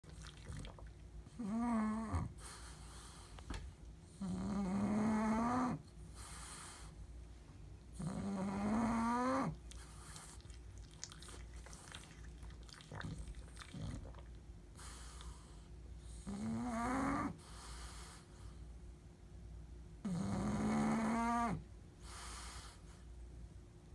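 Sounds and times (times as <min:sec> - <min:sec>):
dog snoring: 0:00.5 - 0:03.1, 0:04.1 - 0:06.8, 0:07.9 - 0:10.5, 0:11.1 - 0:15.5, 0:16.1 - 0:18.2, 0:20.0 - 0:22.8
quiet breathing: 0:02.2 - 0:04.4, 0:05.7 - 0:07.3, 0:13.2 - 0:16.4, 0:17.3 - 0:18.8, 0:22.0 - 0:23.2.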